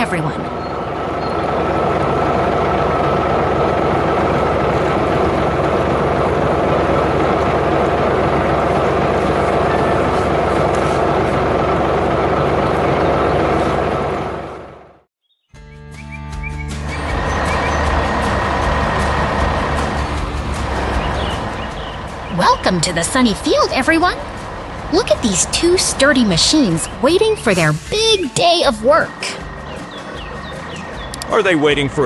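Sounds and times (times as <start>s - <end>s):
constant whine: 0.0s - 15.1s, 16.8s - 32.0s
vehicle engine running: 0.0s - 15.1s, 16.4s - 32.0s.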